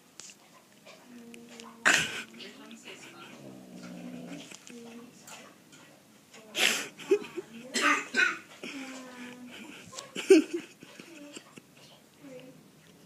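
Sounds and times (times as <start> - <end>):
person coughing: 1.8 - 2.3, 6.6 - 8.4.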